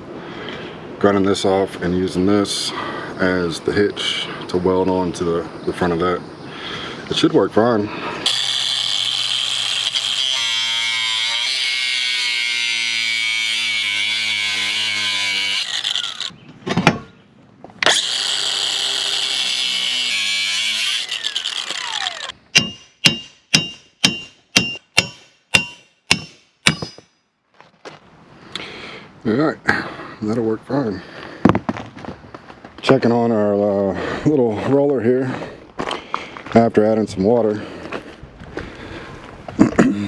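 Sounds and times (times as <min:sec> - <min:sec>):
angle grinder cutting steel: 0:08.2 - 0:16.3, 0:17.8 - 0:22.7
ringing knocks on metal: 0:22.6 - 0:27.1.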